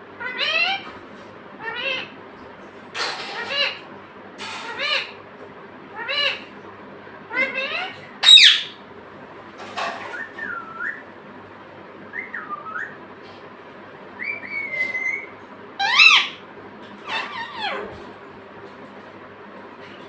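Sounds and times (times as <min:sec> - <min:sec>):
parrot calls: 0:00.2 - 0:00.9, 0:01.6 - 0:02.2, 0:03.2 - 0:03.8, 0:04.6 - 0:05.2, 0:05.9 - 0:06.5, 0:07.3 - 0:08.8, 0:14.2 - 0:16.4, 0:17.0 - 0:18.0
parrot whistling: 0:07.4 - 0:08.8, 0:12.1 - 0:13.0, 0:14.2 - 0:16.4.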